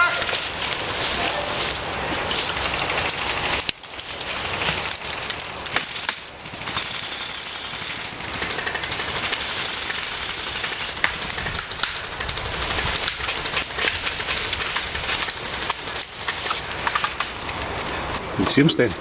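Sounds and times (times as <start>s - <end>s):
airsoft guns firing full-auto: 4.7s - 17.4s.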